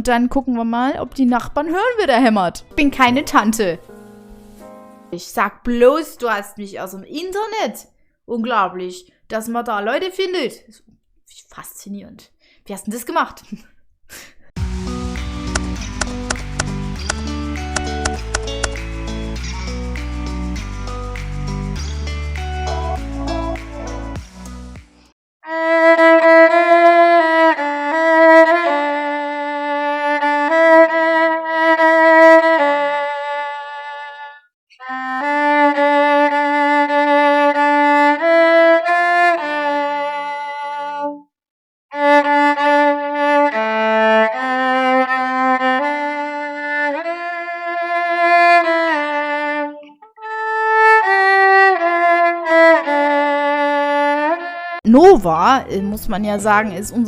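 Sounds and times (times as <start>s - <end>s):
bowed string solo melody: 14.6s - 21.8s, 25.5s - 34.2s, 34.8s - 40.8s, 42.0s - 54.8s.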